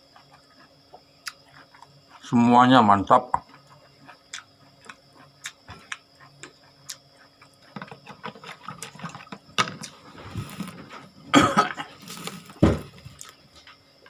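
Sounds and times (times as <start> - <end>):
person chewing with wet smacks: 0.1 - 2.3, 3.4 - 8.0.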